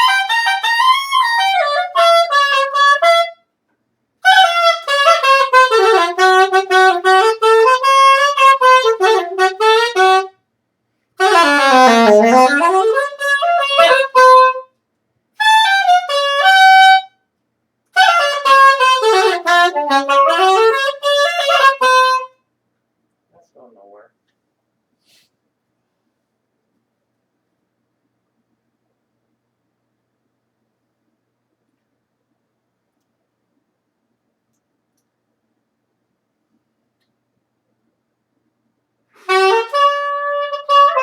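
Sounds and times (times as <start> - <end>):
reedy wind instrument playing: 0.0 - 3.4, 4.2 - 10.3, 11.2 - 14.6, 15.4 - 17.1, 18.0 - 22.3, 39.2 - 41.0.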